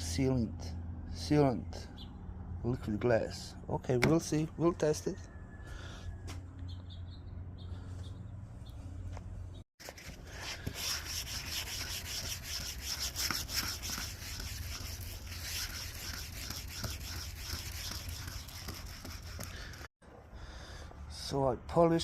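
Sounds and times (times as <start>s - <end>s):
sandpaper rubbing on plastic: 9.8s - 19.9s.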